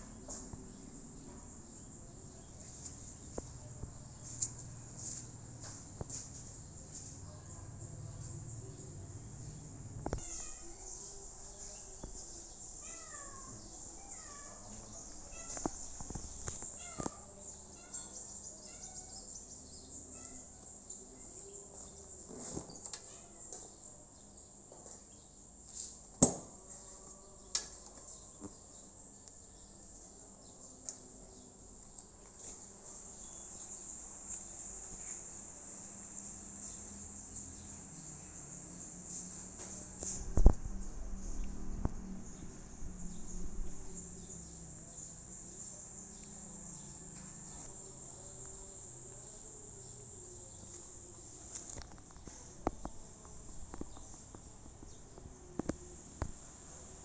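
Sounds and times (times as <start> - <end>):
insects chirping: 0.5 - 24.6, 32.6 - 57.0
low hum: 40.2 - 44.9.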